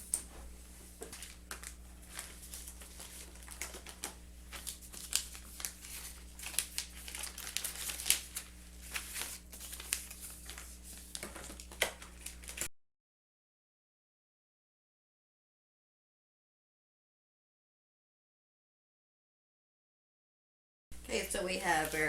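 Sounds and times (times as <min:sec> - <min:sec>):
plastic crinkling and crackling: 0:01.0 - 0:12.7, 0:21.4 - 0:22.0.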